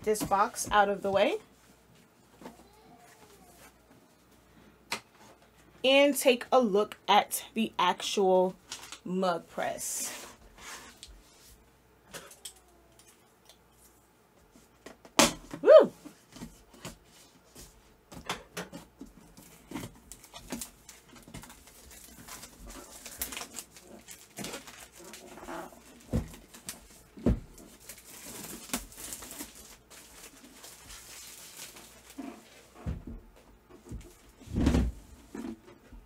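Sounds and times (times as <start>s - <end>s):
packaging rustling: 19.3s - 32.7s.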